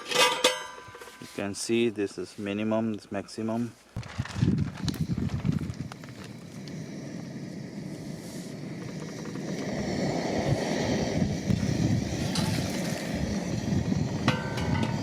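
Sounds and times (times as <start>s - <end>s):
propane burner flame roar: 4.2s - 15.0s.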